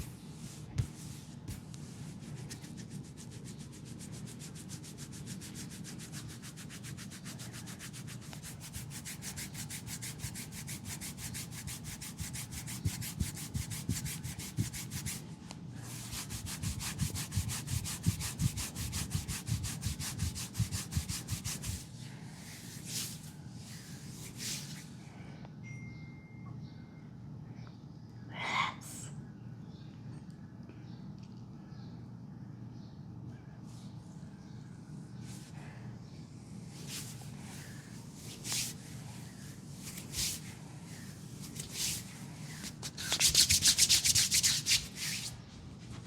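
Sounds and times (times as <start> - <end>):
hands rubbing a leg: 0.0 - 15.2, 15.8 - 21.9, 36.8 - 46.0.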